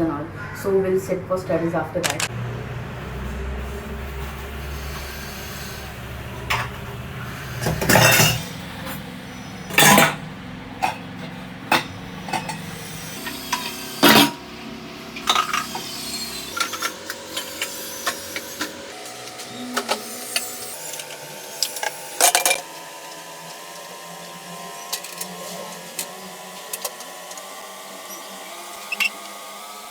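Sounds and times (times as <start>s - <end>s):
dishes and glass clinking: 7.7s - 8.5s, 9.7s - 10.2s.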